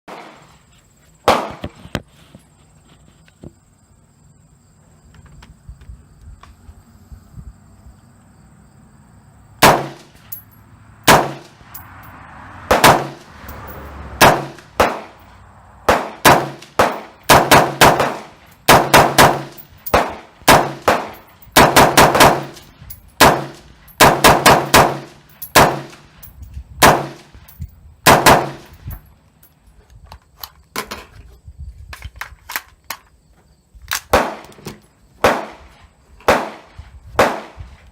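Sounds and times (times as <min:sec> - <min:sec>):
rifle shots: 0:01.3 - 0:01.6, 0:09.6 - 0:10.2, 0:11.1 - 0:11.6, 0:12.7 - 0:13.3, 0:14.2 - 0:15.2, 0:15.9 - 0:22.6, 0:23.2 - 0:26.1, 0:26.8 - 0:27.3, 0:28.0 - 0:28.7, 0:34.1 - 0:34.5, 0:35.2 - 0:35.7, 0:36.3 - 0:37.6.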